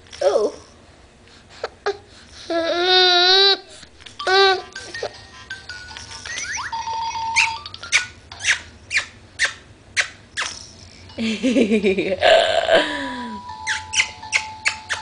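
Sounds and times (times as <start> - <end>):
baby swing squeaking: 4.2 - 11.2, 13.5 - 15.0.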